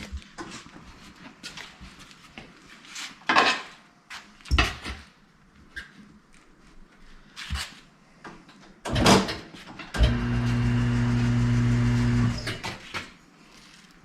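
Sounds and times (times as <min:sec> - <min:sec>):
turntable motor humming: 0:10.0 - 0:12.4.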